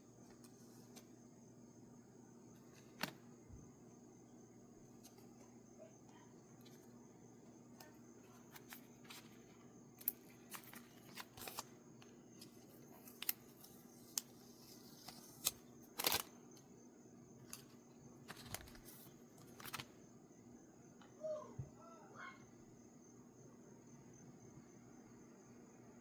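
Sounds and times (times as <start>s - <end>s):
faint steady hum: 0.0s - 26.0s
paper and plastic rustling: 8.4s - 11.7s, 17.5s - 19.9s
packaging clicks: 10.0s - 11.7s, 12.4s - 16.3s, 17.4s - 19.9s.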